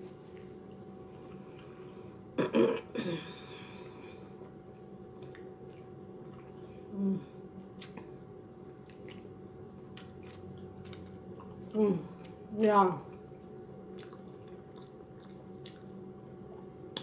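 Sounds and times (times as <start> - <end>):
person burping: 2.4 - 3.3.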